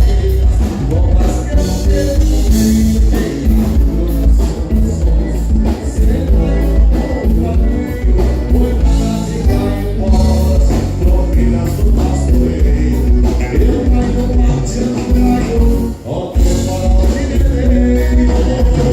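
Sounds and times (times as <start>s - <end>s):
live band playing: 0.0s - 18.9s
person singing: 0.0s - 18.9s.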